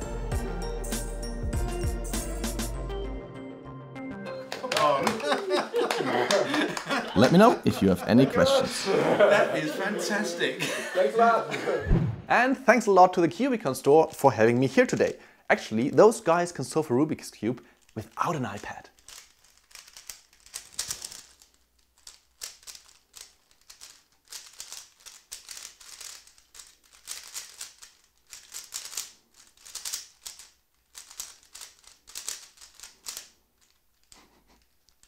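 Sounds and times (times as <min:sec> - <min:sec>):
puzzle cube layers clacking: 0:14.0 - 0:35.0.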